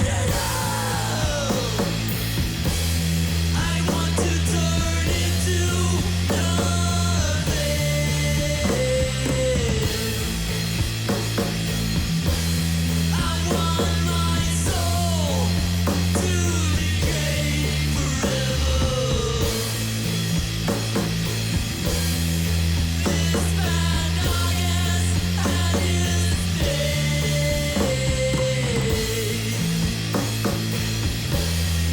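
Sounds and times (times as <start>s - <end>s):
rock band playing: 0.0s - 31.9s.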